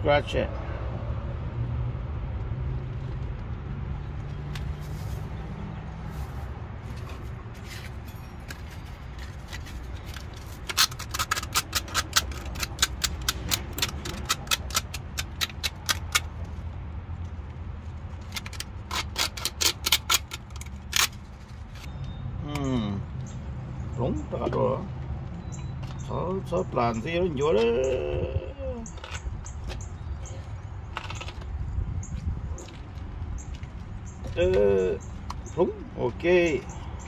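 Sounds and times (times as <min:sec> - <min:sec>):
rapid sharp clicks of hand tools: 0:10.7 - 0:16.3, 0:18.3 - 0:21.2.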